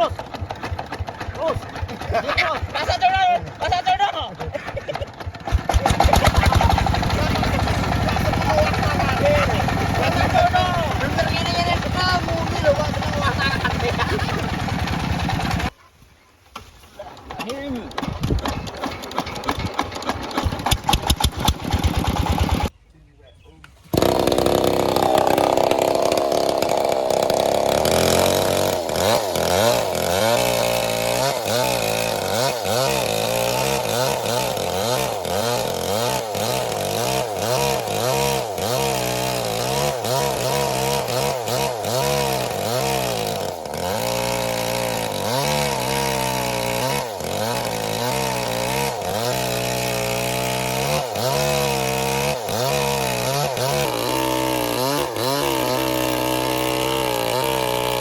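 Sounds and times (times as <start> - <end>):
diesel engine surging: 5.4 - 15.7, 24.0 - 58.0.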